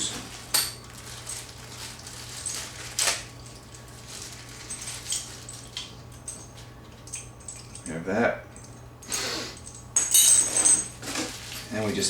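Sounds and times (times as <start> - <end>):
packets rustling and scratching: 0.0 - 5.8, 10.3 - 12.0
steady low hum: 0.0 - 12.0.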